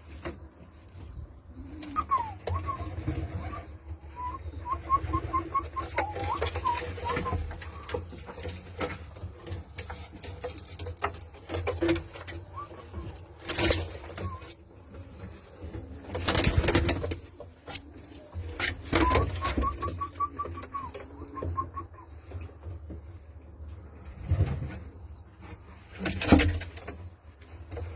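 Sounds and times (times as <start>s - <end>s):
pigeons cooing: 0.9s - 9.8s, 11.6s - 23.2s.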